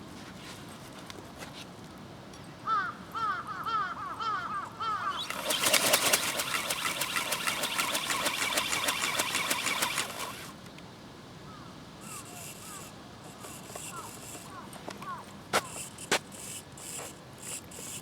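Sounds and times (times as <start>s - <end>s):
bird calls: 2.7s - 10.5s
motor whine with rapid ticking: 4.8s - 10.7s, 12.0s - 18.0s.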